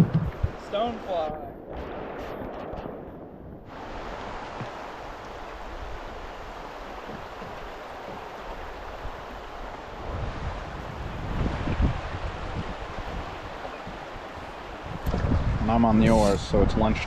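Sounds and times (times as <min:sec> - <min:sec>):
wind buffeting microphone: 0:00.0 - 0:17.0
river water rushing: 0:03.7 - 0:16.4.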